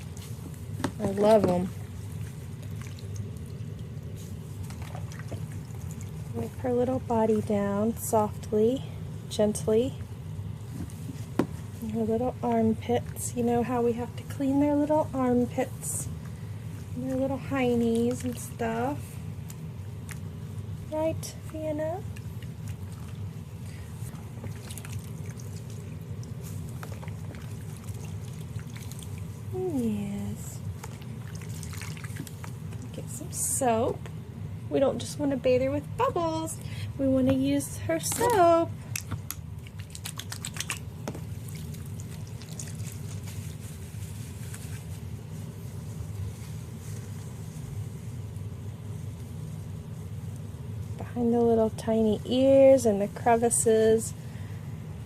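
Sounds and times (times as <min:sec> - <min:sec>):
bath water sloshing: 0:00.0 - 0:08.4, 0:10.5 - 0:33.8, 0:37.4 - 0:48.2
steady low hum: 0:00.0 - 0:55.0
small splashes and drips: 0:02.2 - 0:06.3, 0:22.0 - 0:29.4, 0:30.8 - 0:33.0, 0:38.9 - 0:43.6.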